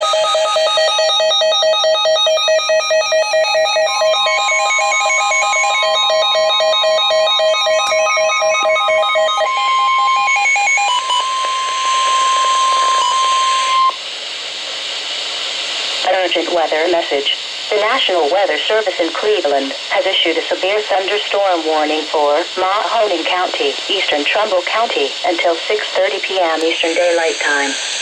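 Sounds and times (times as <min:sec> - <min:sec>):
steady attention tone: 0:20.9 - 0:28.0.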